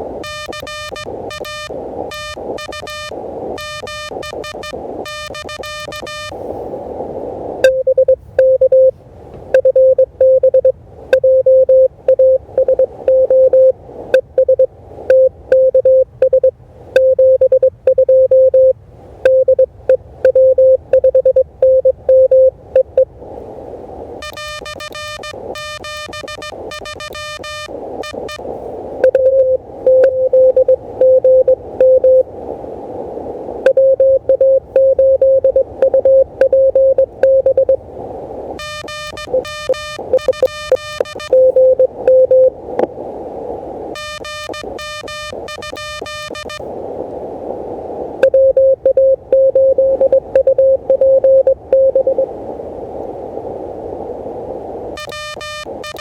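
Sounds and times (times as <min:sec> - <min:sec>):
receiver hiss: 0:00.0 - 0:56.0
buzzy higher keyed tone: 0:00.2 - 0:06.4, 0:24.2 - 0:28.4, 0:38.5 - 0:42.6, 0:43.9 - 0:46.6, 0:55.0 - 0:56.0
morse code tone: 0:00.2 - 0:06.4, 0:07.6 - 0:08.9, 0:09.5 - 0:23.1, 0:24.2 - 0:32.2, 0:33.7 - 0:37.8, 0:38.6 - 0:42.6, 0:43.9 - 0:46.6, 0:48.2 - 0:52.3, 0:55.0 - 0:56.0.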